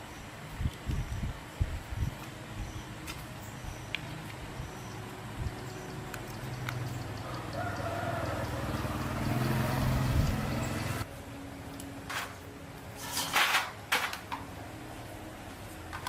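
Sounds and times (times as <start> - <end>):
rooster crowing: 7.2 - 9.6.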